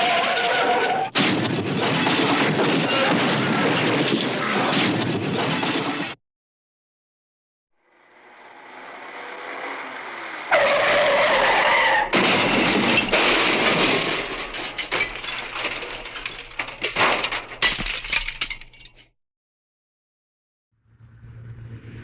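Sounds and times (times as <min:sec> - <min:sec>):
tyre screech: 0:00.0 - 0:01.1, 0:10.5 - 0:12.2
loud car crash: 0:01.1 - 0:06.2, 0:08.3 - 0:18.7
breaking glass: 0:12.1 - 0:19.1
debris clattering and tinkling: 0:12.2 - 0:19.1.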